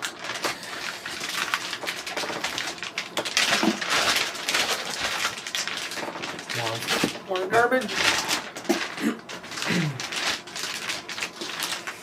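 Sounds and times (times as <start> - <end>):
packing material crinkling: 0.0 - 12.0.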